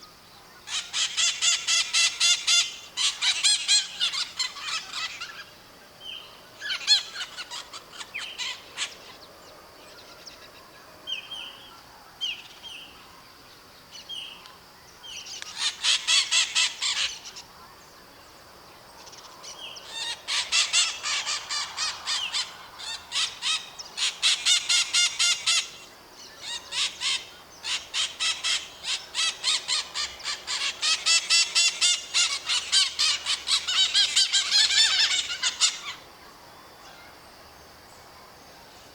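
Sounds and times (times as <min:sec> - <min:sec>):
parakeets screeching: 0:26.4 - 0:36.0.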